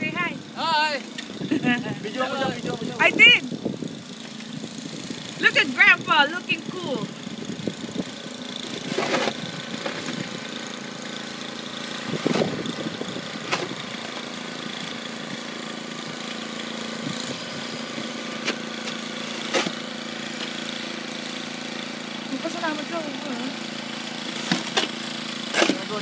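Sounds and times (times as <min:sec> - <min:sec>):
small engine running: 0:00.0 - 0:26.0
knocks and scrapes: 0:08.8 - 0:10.3.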